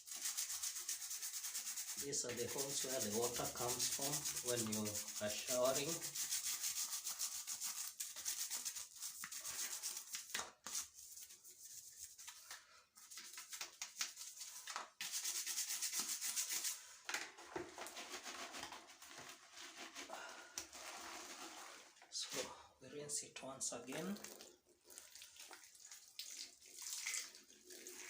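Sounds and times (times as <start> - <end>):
scrubbing shower head: 0.1 - 10.9.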